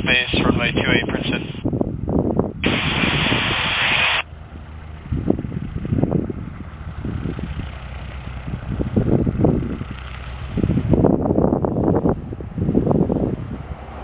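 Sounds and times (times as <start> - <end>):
radio static hiss: 0.0 - 1.6, 2.6 - 4.3
wind gusting on microphone: 0.0 - 4.2, 5.0 - 14.0.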